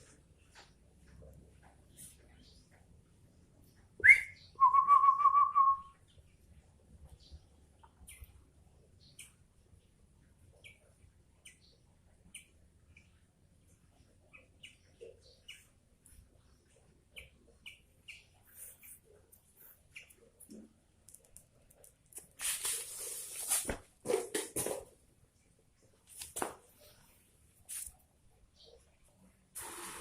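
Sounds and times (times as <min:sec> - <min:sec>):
bird chirping: 0:03.6 - 0:20.7, 0:28.4 - 0:29.1.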